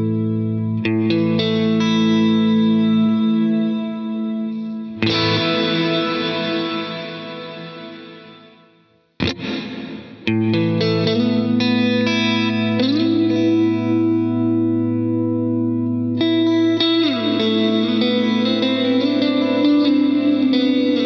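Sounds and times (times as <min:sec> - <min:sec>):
electric guitar with reverb: 0:00.0 - 0:21.0.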